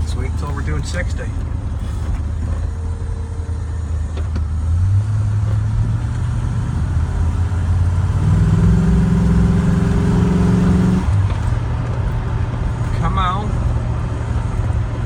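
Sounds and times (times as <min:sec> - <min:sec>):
truck engine drone: 0:00.0 - 0:15.0.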